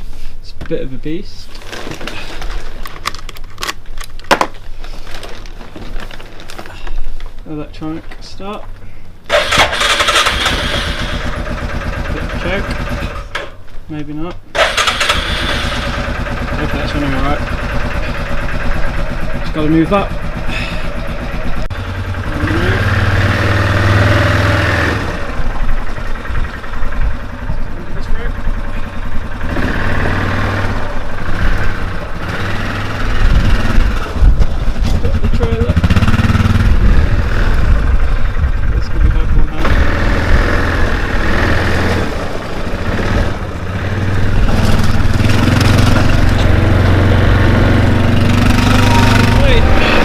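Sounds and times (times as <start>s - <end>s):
quad bike engine revving: 9.3s - 13.5s, 14.5s - 50.0s.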